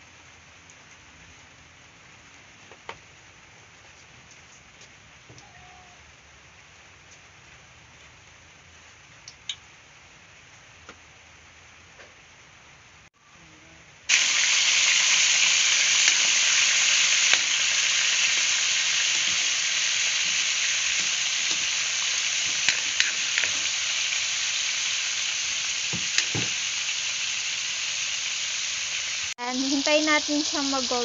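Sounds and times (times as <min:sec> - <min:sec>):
chicken frying in hot oil: 0:14.1 - 0:31.0.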